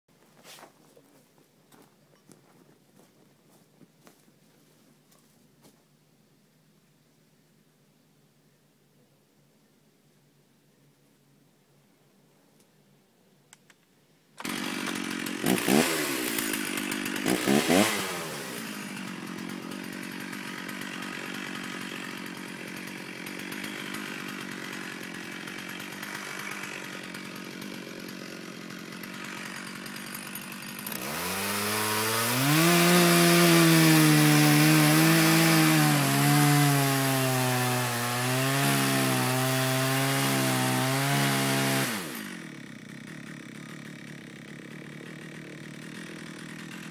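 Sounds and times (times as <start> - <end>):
chainsaw cutting wood: 14.4 - 46.9
chainsaw revving and idling: 14.4 - 46.9.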